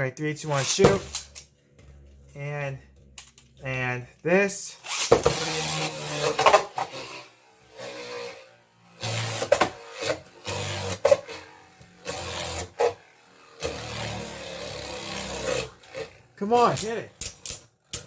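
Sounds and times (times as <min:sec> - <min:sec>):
spinning tops whirring: 0:00.4 - 0:18.0
spinning tops clacking together: 0:00.5 - 0:01.5, 0:16.6 - 0:18.0.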